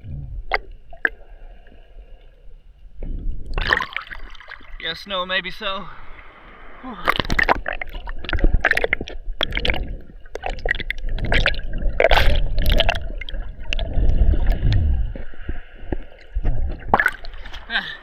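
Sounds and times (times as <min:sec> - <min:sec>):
heavy low rumble: 0:00.0 - 0:00.6, 0:14.3 - 0:15.2.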